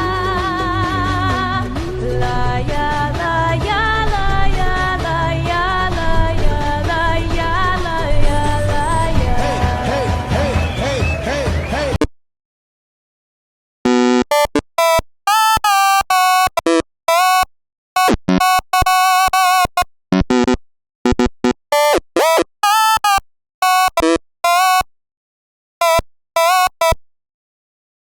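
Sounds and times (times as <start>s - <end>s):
choppy synthetic melody: 0.6s - 12.0s.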